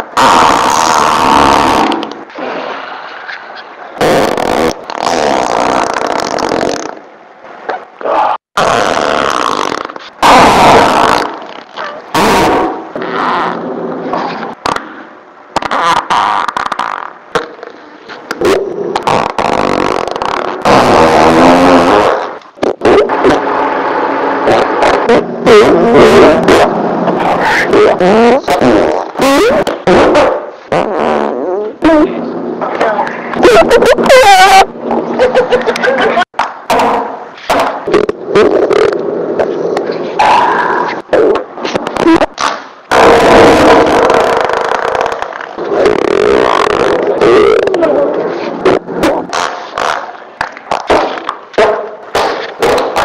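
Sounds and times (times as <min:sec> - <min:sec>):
farts: 0:00.0 - 0:02.8, 0:04.0 - 0:07.0, 0:08.6 - 0:14.9, 0:15.5 - 0:23.6, 0:24.4 - 0:32.2, 0:37.5 - 0:53.0.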